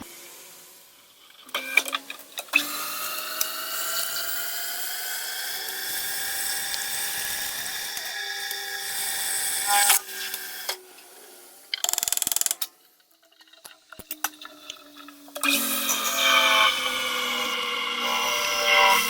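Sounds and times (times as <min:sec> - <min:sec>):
power tool motor whining: 0:01.5 - 0:10.8, 0:15.4 - 0:19.0.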